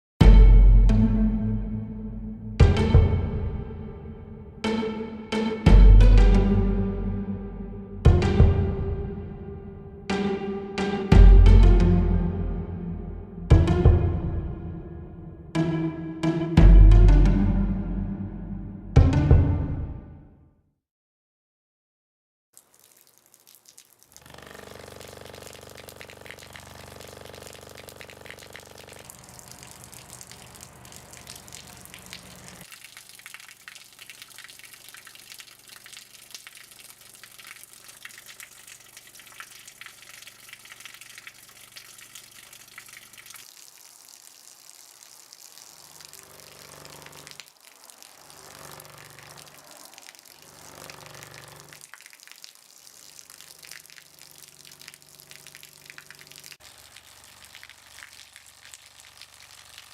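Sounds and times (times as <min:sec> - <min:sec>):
water running from hose: 0:22.6 - 0:59.9
low buzzing hum: 0:24.2 - 0:32.6, 0:45.0 - 0:47.4.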